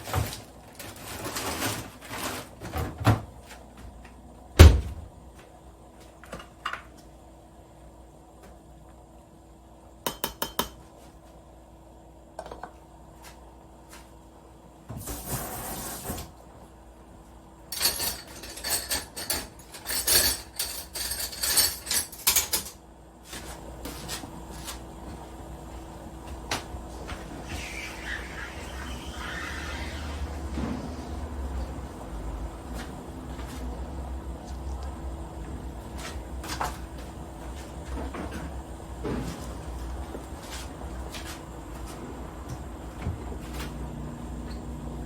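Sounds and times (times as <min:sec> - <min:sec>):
dishes and utensils clattering: 0:17.8 - 0:22.8.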